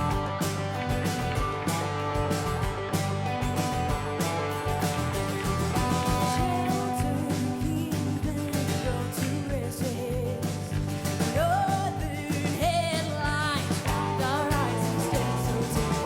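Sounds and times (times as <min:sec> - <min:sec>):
drums beating: 0:00.0 - 0:16.0
rock band playing: 0:00.0 - 0:16.0
person singing: 0:06.2 - 0:16.0.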